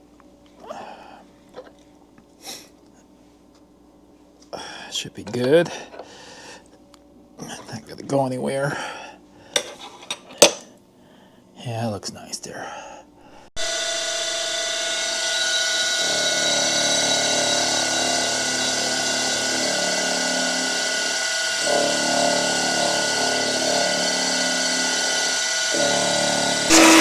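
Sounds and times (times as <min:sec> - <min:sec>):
cutter cutting metal: 0:13.6 - 0:27.0
milling machine whine: 0:13.6 - 0:27.0.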